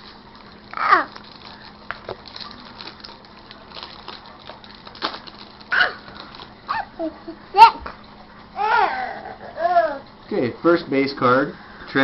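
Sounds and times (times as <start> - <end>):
packaging crackling and crinkling: 0.2 - 6.6
small child crying out: 0.7 - 1.1, 8.6 - 10.1.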